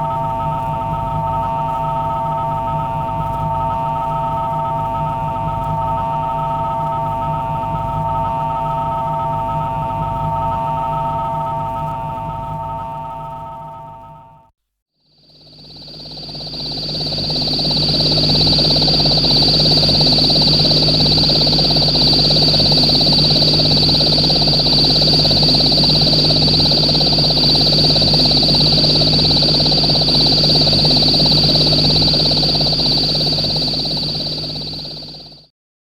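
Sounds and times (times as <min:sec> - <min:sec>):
high-pitched pulsing whistle: 0:15.4 - 0:35.5
low hum: 0:15.6 - 0:35.4.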